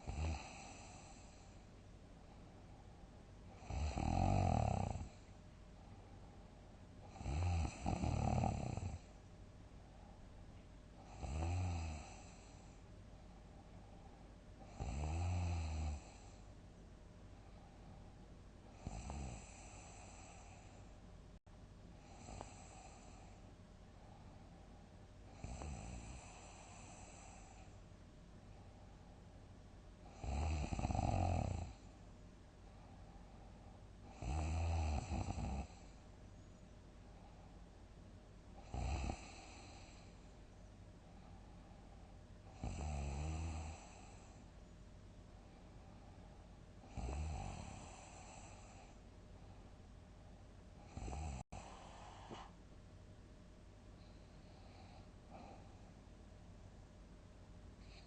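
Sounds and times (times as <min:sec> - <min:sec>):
person snoring heavily: 0:00.0 - 0:01.4, 0:03.6 - 0:05.2, 0:07.1 - 0:09.0, 0:11.1 - 0:12.4, 0:14.7 - 0:16.3, 0:30.1 - 0:31.8, 0:34.1 - 0:35.8, 0:38.6 - 0:40.0, 0:46.9 - 0:48.8, 0:50.9 - 0:52.5.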